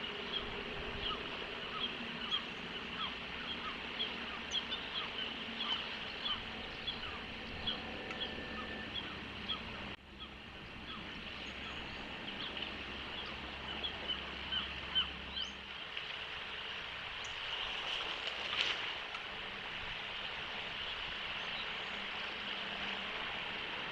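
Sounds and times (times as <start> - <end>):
birds chirping: 0.0 - 15.8.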